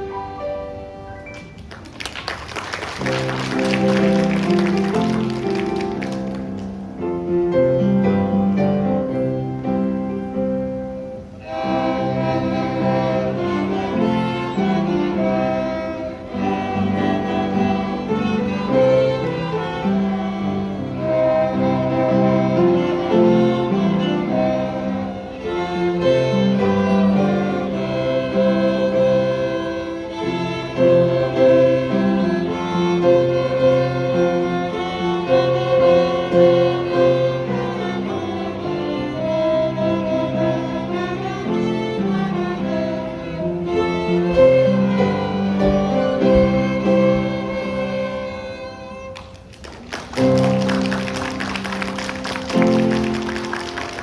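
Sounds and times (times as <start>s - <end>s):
children playing violins: 0.0s - 0.9s, 11.3s - 49.5s.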